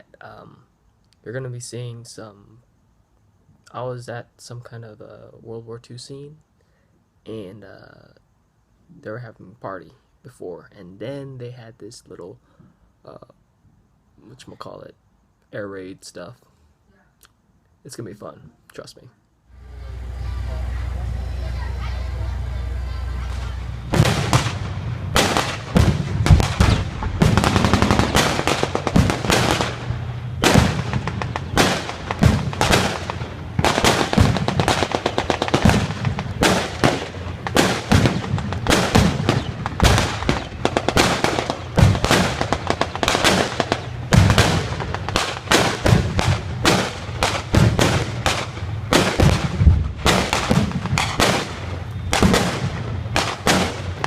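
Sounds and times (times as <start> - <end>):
low steady hum: 19.3 - 48.9
cannon booms: 22.3 - 54.0
rapid blank gunfire: 23.3 - 54.0.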